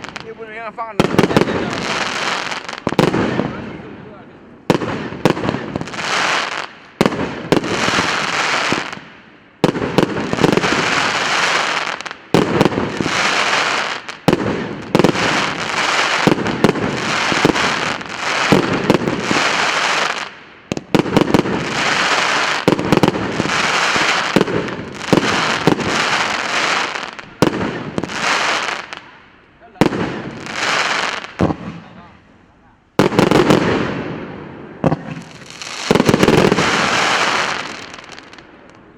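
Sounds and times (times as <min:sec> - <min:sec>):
firework shots banging and crackling: 0:00.0 - 0:32.1, 0:33.0 - 0:38.9.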